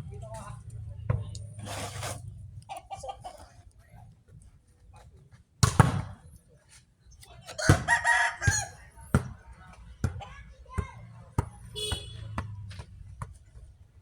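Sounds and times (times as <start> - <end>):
rooster crowing: 7.6 - 8.8.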